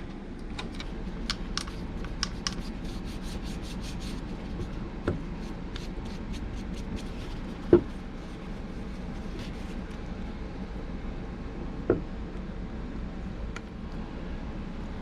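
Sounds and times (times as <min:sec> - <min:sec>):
small scratches and clicks: 0:00.6 - 0:04.8.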